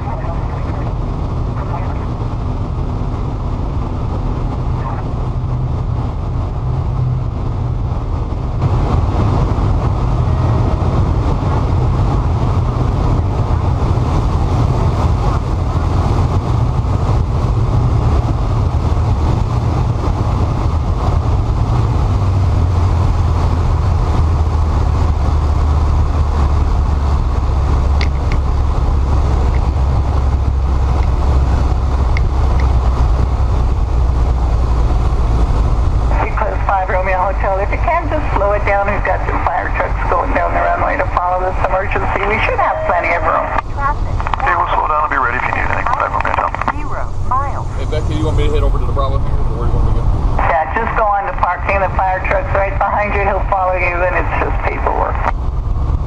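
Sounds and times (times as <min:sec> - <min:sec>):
airliner engine drone: 0:00.0 - 0:56.0
rushing air: 0:00.0 - 0:56.0.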